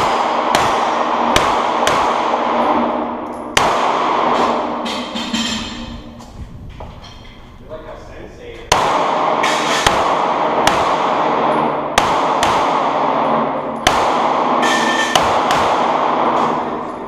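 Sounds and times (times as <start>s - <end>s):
pistol shots echoing indoors: 0.0s - 5.2s, 8.7s - 17.0s.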